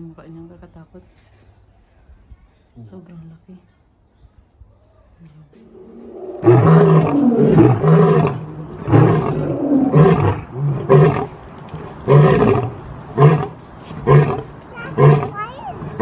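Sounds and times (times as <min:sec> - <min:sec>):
lion roaring: 0:05.6 - 0:11.4, 0:12.0 - 0:16.0.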